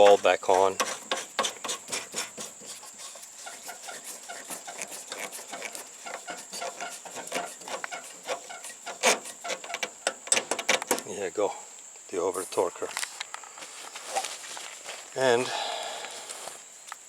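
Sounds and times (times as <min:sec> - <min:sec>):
thin steady high whine: 0:00.0 - 0:17.0
knob screwing clicks and scrapes: 0:04.3 - 0:11.1.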